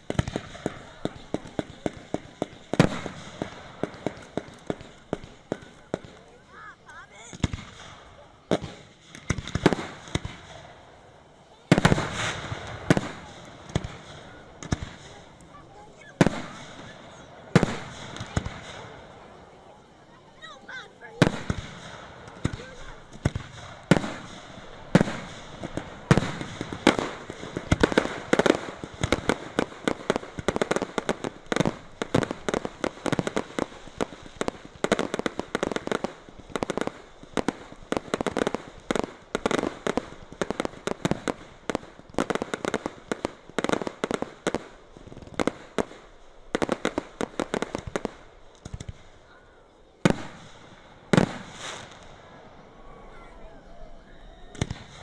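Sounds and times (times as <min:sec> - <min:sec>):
fireworks bursting and crackling: 0:00.0 - 0:55.0.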